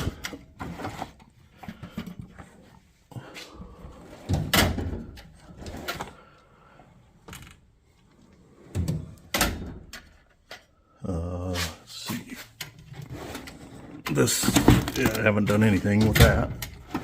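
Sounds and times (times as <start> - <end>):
metal drawers sliding and clunking: 3.9 - 6.2, 8.3 - 10.2, 12.4 - 17.0.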